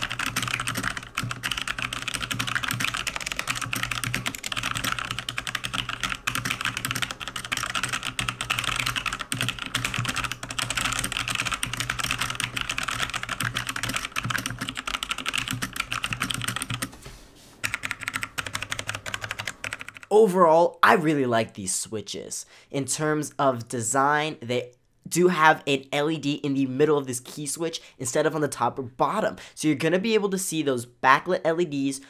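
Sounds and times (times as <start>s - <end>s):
fast typing on mechanical keyboard: 0.0s - 16.9s, 17.6s - 20.1s.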